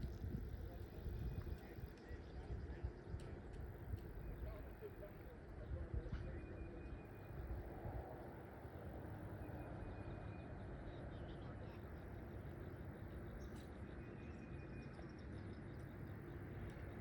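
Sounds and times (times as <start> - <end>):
wind rumble on microphone: 0.0 - 17.0
faint bird chirps: 8.8 - 17.0.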